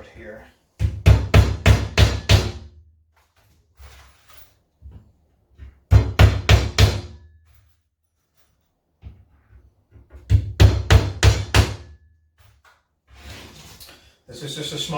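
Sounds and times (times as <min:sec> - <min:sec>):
hammer driving nails into wood: 0:00.8 - 0:02.7, 0:05.9 - 0:07.2.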